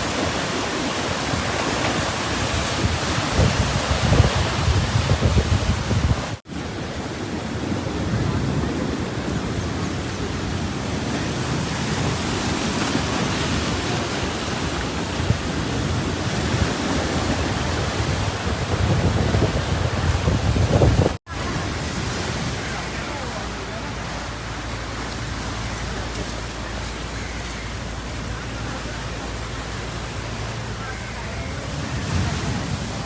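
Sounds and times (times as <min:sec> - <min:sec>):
wind buffeting microphone: 0:00.0 - 0:23.1
sea surf on a beach: 0:00.0 - 0:33.0.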